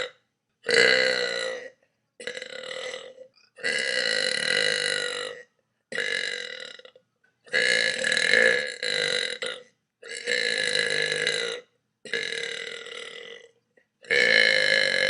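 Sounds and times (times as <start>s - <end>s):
person burping: 0.0s - 15.0s.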